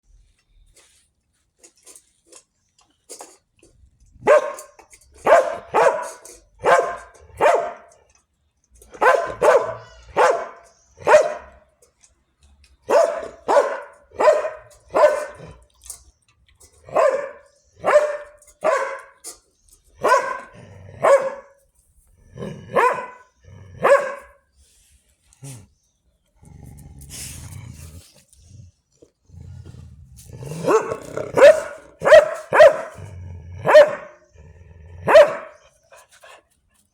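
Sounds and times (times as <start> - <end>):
dog barking: 4.2 - 7.9, 9.0 - 11.6, 12.9 - 15.5, 16.9 - 19.2, 20.0 - 21.6, 22.7 - 24.4, 30.6 - 34.2, 35.0 - 35.6.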